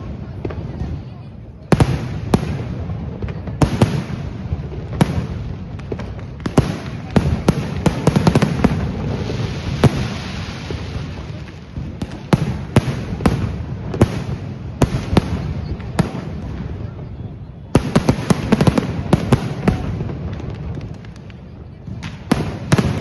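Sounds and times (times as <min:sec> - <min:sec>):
fireworks and firecrackers banging: 0:00.0 - 0:23.0.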